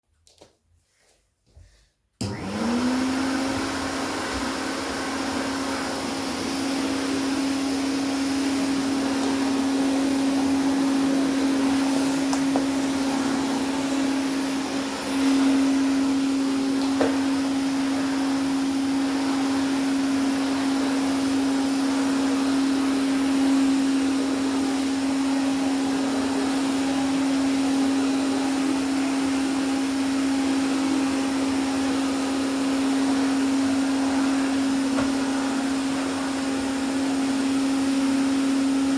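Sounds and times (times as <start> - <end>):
vacuum cleaner motor humming: 2.2 - 38.9.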